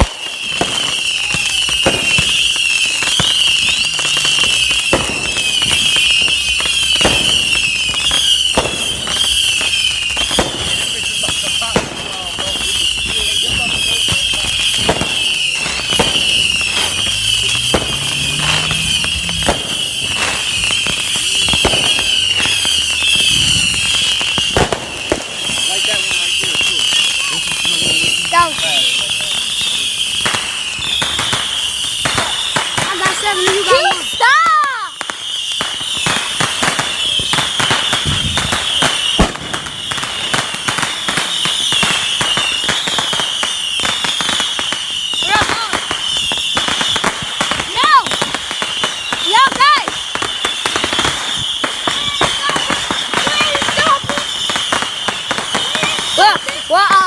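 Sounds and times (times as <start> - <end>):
fireworks bangs and pops: 0.0 - 57.0
high warbling firework whistle: 0.0 - 57.0
loud bang: 14.4 - 24.9.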